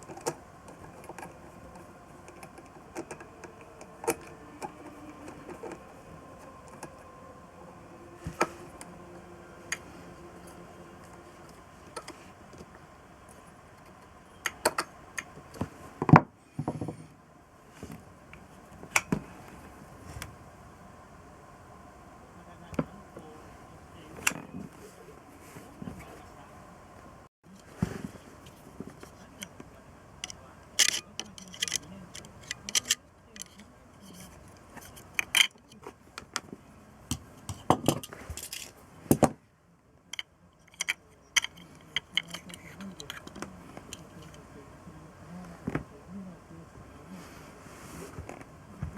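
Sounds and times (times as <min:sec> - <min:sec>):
tools and metal parts clicking: 0:30.2 - 0:35.7, 0:37.9 - 0:38.8, 0:40.2 - 0:44.4.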